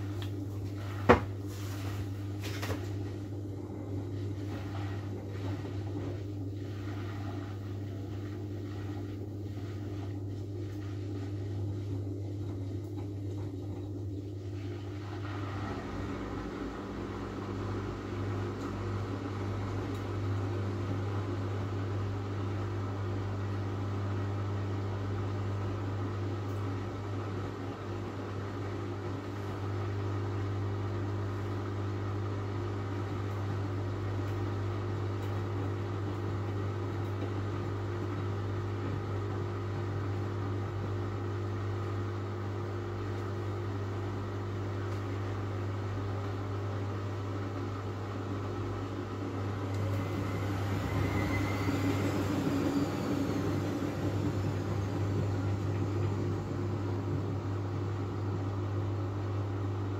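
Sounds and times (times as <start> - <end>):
washing machine hum: 0.0 - 59.9
motor whine: 49.2 - 58.8.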